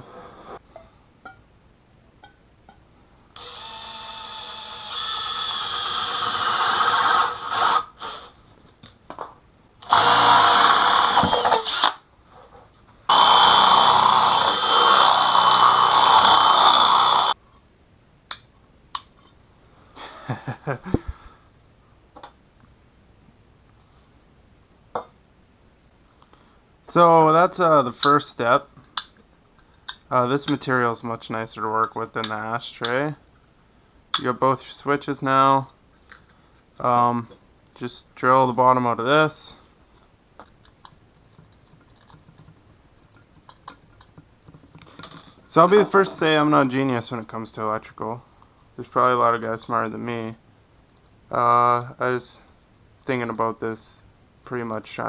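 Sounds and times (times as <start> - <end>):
power tool motor running: 3.4 - 8.2, 9.8 - 12.0, 13.1 - 17.4.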